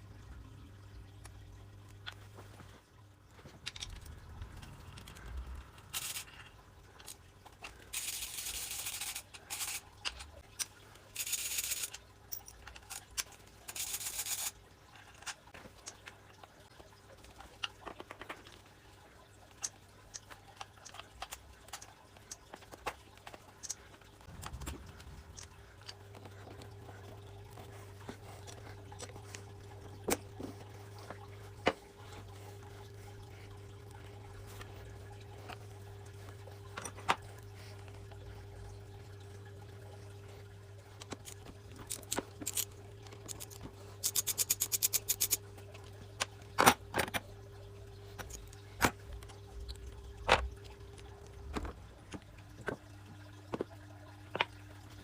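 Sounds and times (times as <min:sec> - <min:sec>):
clicks and knocks of tools: 0:03.4 - 0:05.2, 0:41.0 - 0:47.3
steady low hum: 0:18.8 - 0:55.0.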